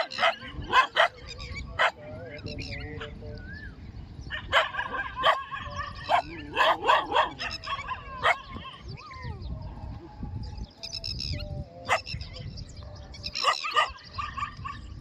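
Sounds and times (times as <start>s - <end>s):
dog barking and yelping: 0.0s - 2.0s, 4.3s - 9.5s, 13.4s - 14.8s.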